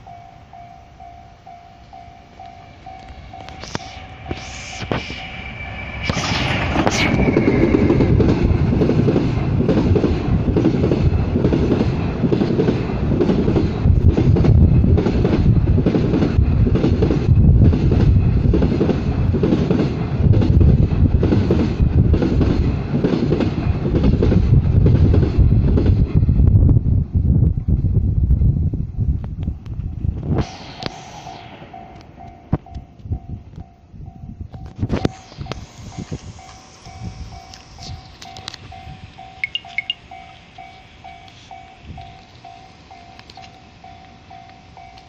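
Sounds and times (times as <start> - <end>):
train passing: 0.0 - 45.0.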